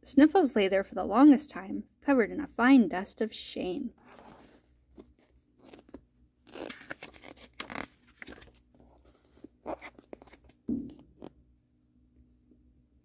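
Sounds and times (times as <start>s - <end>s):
book pages rustling: 4.0s - 11.4s.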